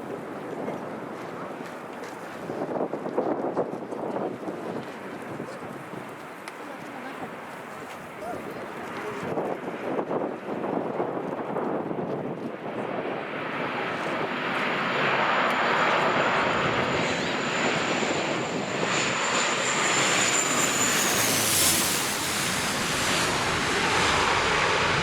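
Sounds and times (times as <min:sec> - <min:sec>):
jet airliner passing: 0:08.8 - 0:25.0.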